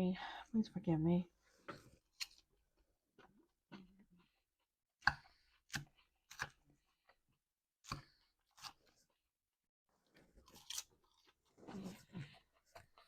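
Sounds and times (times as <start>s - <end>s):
lettuce crunching while chewed: 10.1s - 13.0s.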